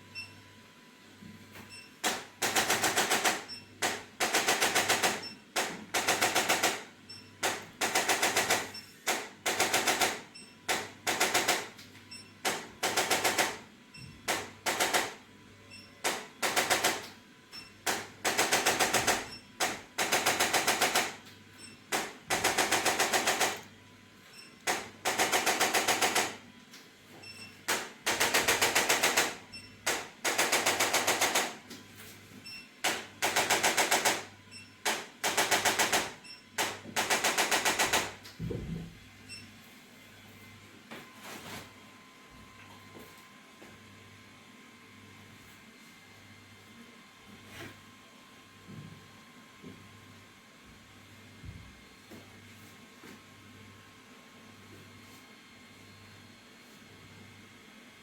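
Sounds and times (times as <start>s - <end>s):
rapid mechanical clicking: 2.0s - 11.7s, 16.0s - 17.1s, 17.9s - 21.2s, 21.9s - 23.7s, 24.7s - 26.4s, 27.7s - 31.6s, 32.8s - 38.2s.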